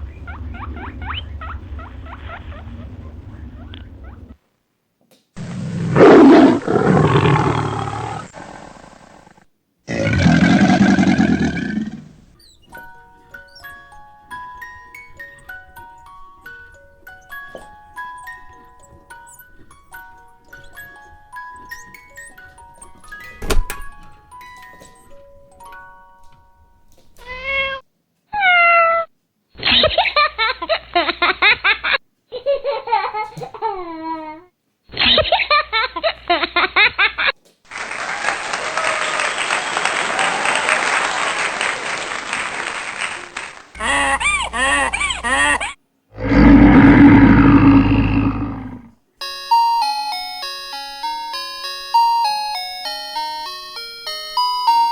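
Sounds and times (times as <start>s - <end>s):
animal calls: 0.0s - 4.4s, 5.4s - 12.8s, 43.8s - 48.9s
loud rough animal call: 0.0s - 4.4s, 5.4s - 12.4s, 46.2s - 48.9s
cat meowing: 27.2s - 29.1s
music box melody: 49.2s - 54.9s.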